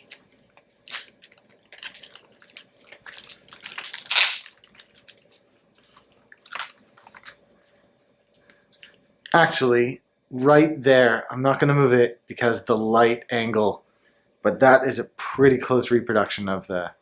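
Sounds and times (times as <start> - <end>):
packaging rustling and crinkling: 0.0 - 7.4.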